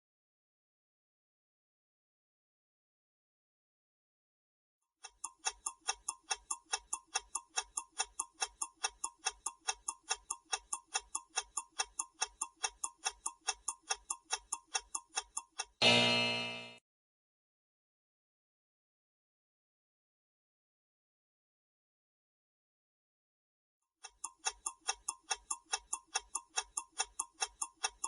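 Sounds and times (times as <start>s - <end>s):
clock ticking: 5.0s - 16.8s, 24.0s - 28.0s
loud pitched tone: 15.8s - 16.8s.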